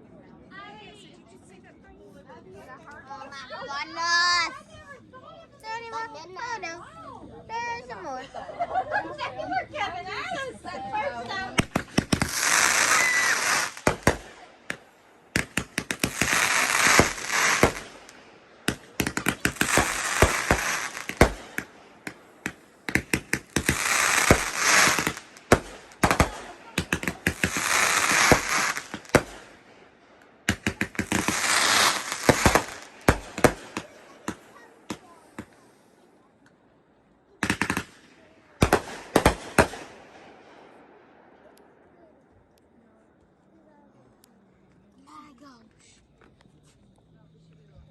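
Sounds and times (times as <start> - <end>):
fireworks cracking and banging: 11.2 - 36.7, 37.3 - 41.9
fireworks hissing crackle: 11.2 - 40.8.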